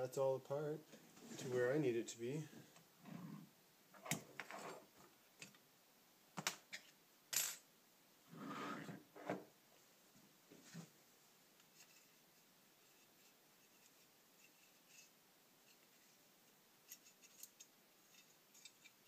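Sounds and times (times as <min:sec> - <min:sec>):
small metal parts clinking: 0:16.8 - 0:19.0.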